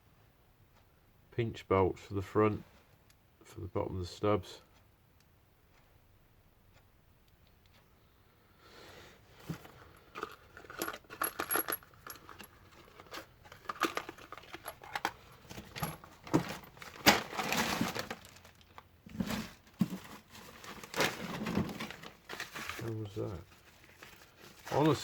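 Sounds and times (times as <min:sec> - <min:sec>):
metal bolts clinking: 0:10.2 - 0:17.3.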